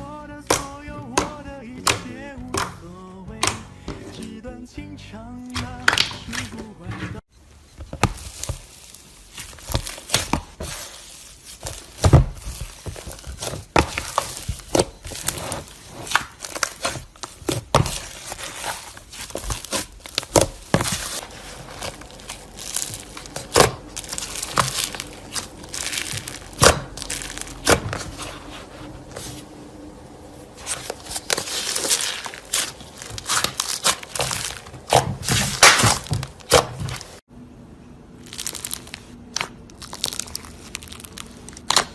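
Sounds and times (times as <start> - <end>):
slime crackling and popping: 7.8 - 29.3, 30.4 - 37.3, 38.2 - 41.9.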